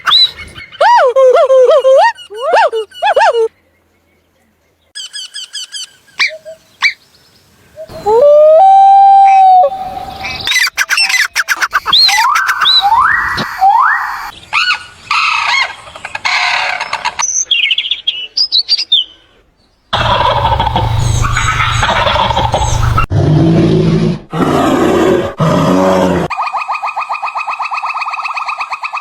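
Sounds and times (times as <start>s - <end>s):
birds chirping and calling: 5.0s - 7.2s, 10.1s - 23.1s
low hum: 20.0s - 23.2s.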